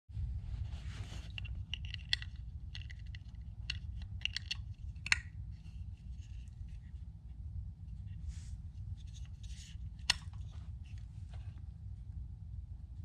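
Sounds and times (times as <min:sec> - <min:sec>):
steady low rumble: 0:00.1 - 0:13.0
clicks and taps of small objects: 0:01.2 - 0:05.3.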